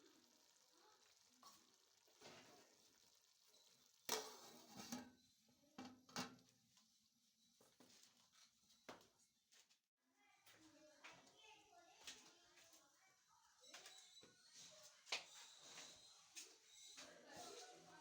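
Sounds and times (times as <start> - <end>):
spoon scraping and knocking pot: 4.1 - 5.1.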